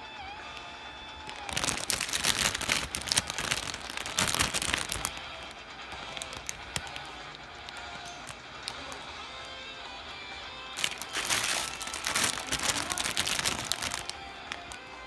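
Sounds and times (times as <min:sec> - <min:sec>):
plastic packaging crinkling: 0:01.2 - 0:09.0, 0:10.8 - 0:15.0.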